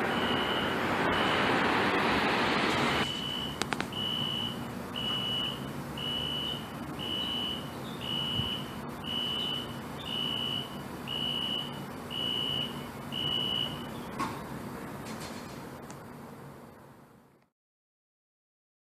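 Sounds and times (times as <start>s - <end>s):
alarm horn beeping: 0.0s - 14.0s.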